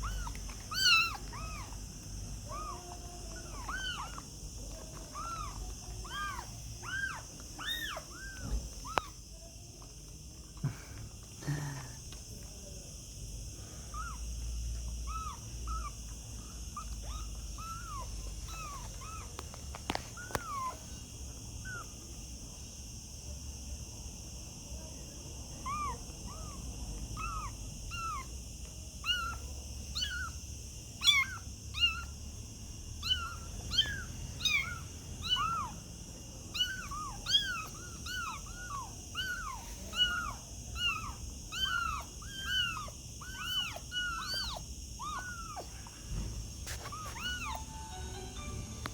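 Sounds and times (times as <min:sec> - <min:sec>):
kittens mewing: 0:00.0 - 0:09.2, 0:15.0 - 0:21.0, 0:25.6 - 0:28.4, 0:29.0 - 0:32.2, 0:33.0 - 0:47.8.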